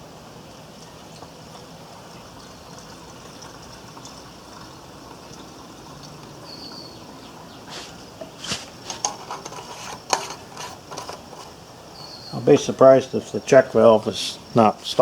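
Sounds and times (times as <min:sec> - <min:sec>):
liquid pouring in a stream: 0:00.0 - 0:11.8.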